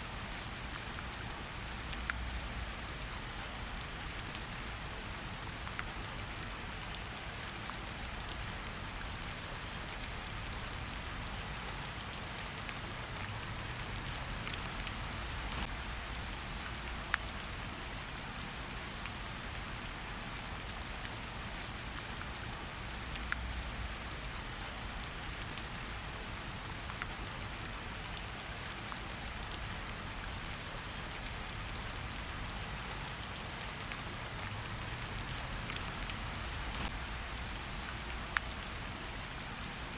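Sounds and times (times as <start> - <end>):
rain hissing: 9.0 - 20.6, 29.2 - 39.9.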